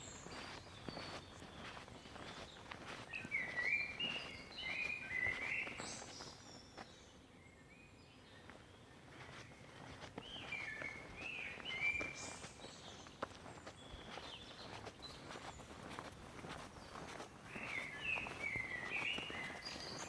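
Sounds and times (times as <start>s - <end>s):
songbirds chirping: 0.0s - 20.0s.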